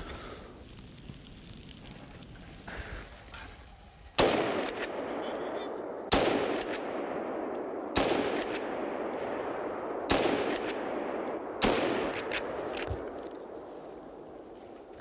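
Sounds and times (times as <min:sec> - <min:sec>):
rifle shots with rolling echo: 0:04.2 - 0:14.5.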